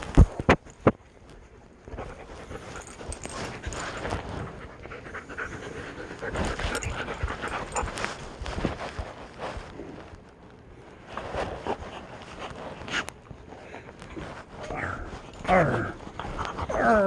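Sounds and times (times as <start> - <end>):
dogs chewing on gloves: 0.1 - 17.0
dogs panting: 1.4 - 9.1, 11.2 - 17.0.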